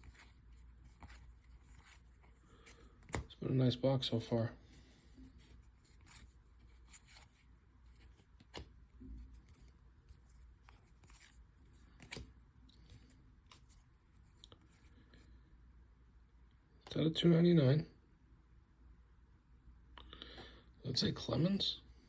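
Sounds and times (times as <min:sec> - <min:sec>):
trading cards clicking and rustling: 0:00.0 - 0:03.4, 0:08.0 - 0:13.8.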